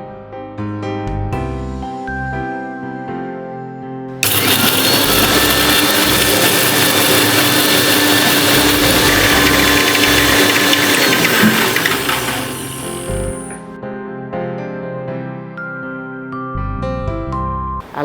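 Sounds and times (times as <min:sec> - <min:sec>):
mixer grinder grinding: 0:04.2 - 0:13.6.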